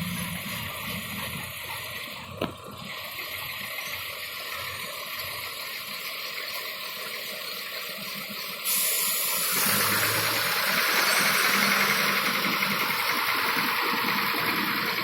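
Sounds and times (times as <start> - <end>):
diesel engine humming: 0.0 - 15.0
steady hissing: 8.7 - 12.2.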